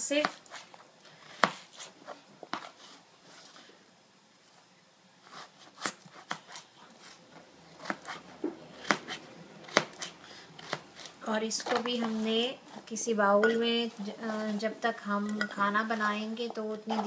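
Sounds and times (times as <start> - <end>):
knife chopping on a board: 8.8 - 11.1.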